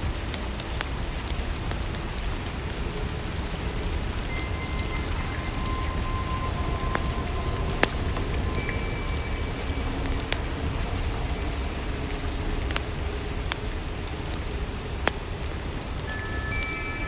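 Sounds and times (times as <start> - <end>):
steady rain: 0.0 - 17.0
wood fire crackling: 0.0 - 17.0
low rumble: 2.4 - 16.0.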